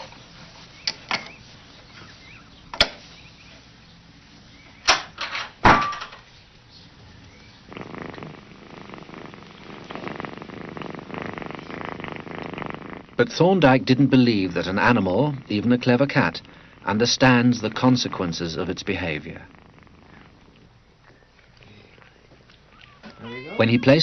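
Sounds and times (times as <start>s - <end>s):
cat purring: 6.5s - 24.0s.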